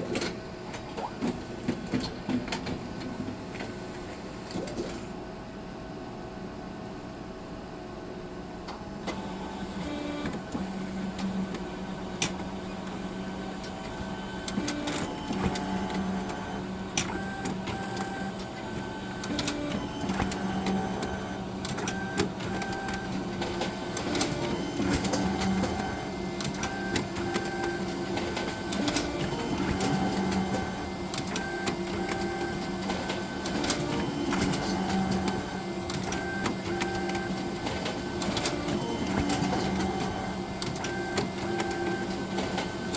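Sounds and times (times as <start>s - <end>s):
printer motor hum: 5.9s - 42.9s
printer clicks and ticks: 8.6s - 13.0s, 13.6s - 42.9s.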